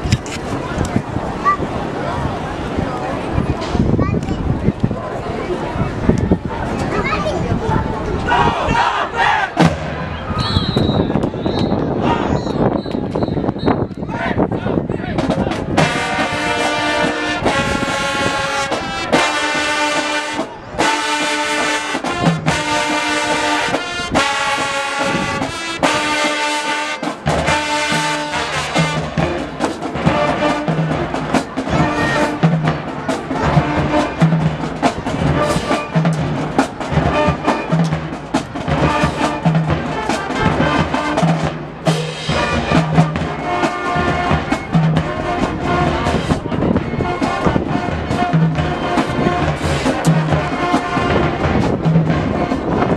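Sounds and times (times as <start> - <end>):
steady drum beat: 15.1 - 52.9
brass chords in short blasts: 15.8 - 29.4.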